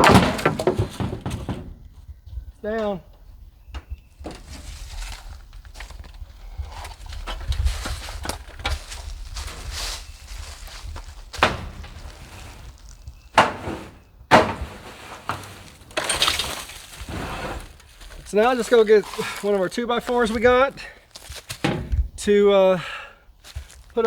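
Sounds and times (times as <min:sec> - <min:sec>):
sharp knocks: 0:00.0 - 0:01.8, 0:13.4 - 0:16.2
handling noise: 0:00.0 - 0:02.2, 0:03.6 - 0:22.2
footsteps: 0:04.2 - 0:22.1, 0:23.4 - 0:24.0.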